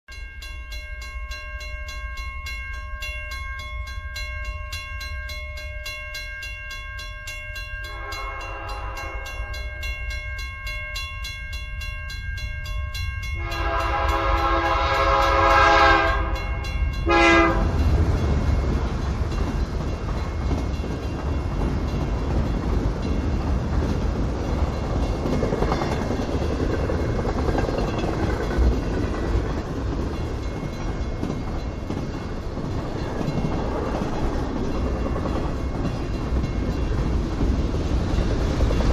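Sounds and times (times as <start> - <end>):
railroad crossing bell ringing: 0.1 - 38.9
train rumble and rail clatter: 0.1 - 38.9
train horn blasts: 7.9 - 9.5, 13.4 - 17.8.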